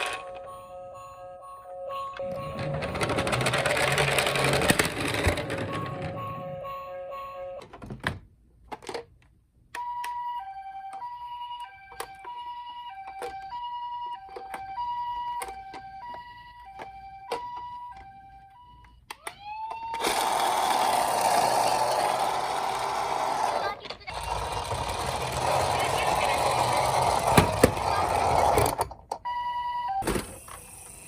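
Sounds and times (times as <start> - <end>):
toy two-tone siren: 0.0 - 7.7, 9.8 - 28.6, 29.2 - 31.0
plastic toy clicks and knocks: 2.6 - 6.1
toy police siren wail: 9.8 - 28.6, 29.2 - 30.6.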